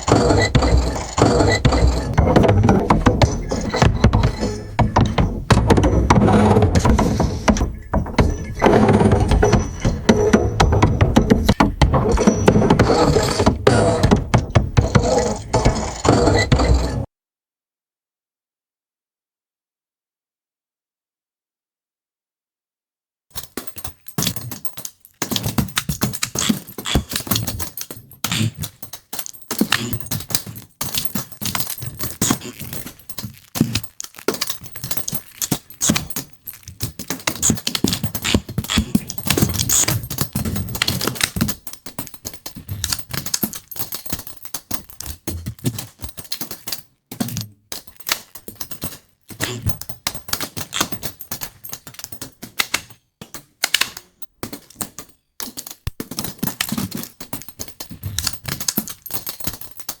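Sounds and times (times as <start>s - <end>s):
crackling clatter of clicks: 23.3s - 51.0s.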